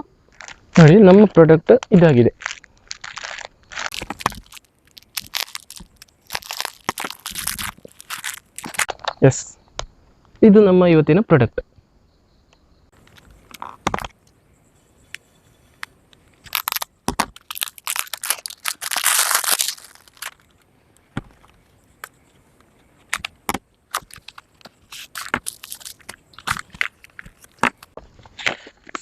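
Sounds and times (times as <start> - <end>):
packaging clicks and crackles: 0.3 - 8.9, 16.4 - 20.7, 21.4 - 29.0
packaging rustle: 2.4 - 8.9, 16.4 - 20.6, 23.0 - 29.0.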